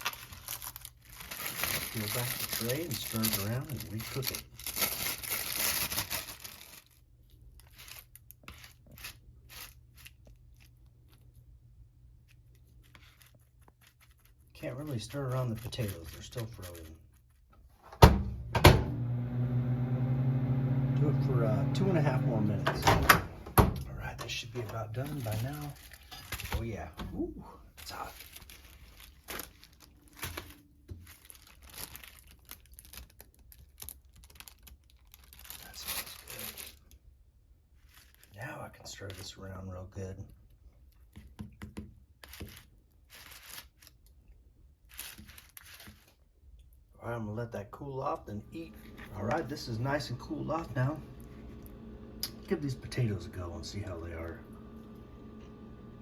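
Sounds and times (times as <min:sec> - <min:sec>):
plastic film crinkling and tearing: 0:00.0 - 0:11.4, 0:12.2 - 0:17.5, 0:24.5 - 0:26.8, 0:27.8 - 0:37.1, 0:37.7 - 0:39.4, 0:42.1 - 0:46.3.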